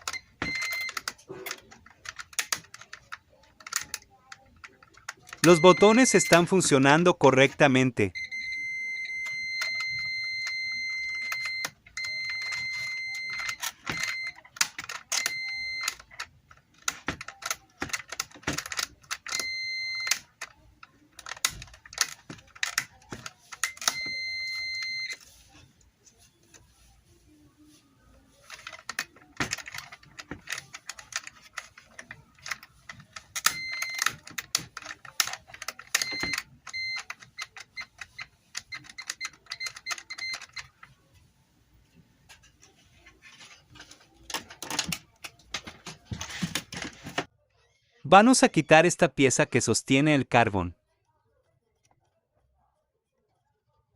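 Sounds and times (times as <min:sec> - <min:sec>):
multimeter continuity beeps: 0:00.0 - 0:01.2, 0:05.2 - 0:16.3, 0:18.5 - 0:20.6, 0:21.3 - 0:25.7, 0:33.2 - 0:40.8.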